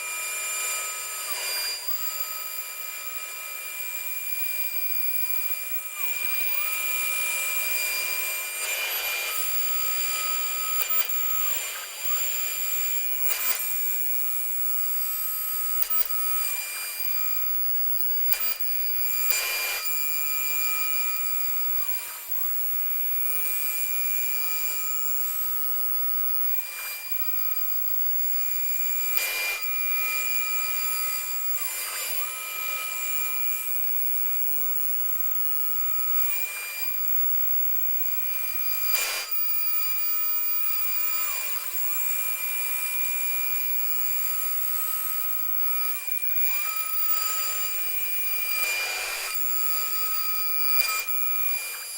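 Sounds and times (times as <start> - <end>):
cnc router whine: 0.0 - 51.9
sharp clicks: 30.7 - 51.7.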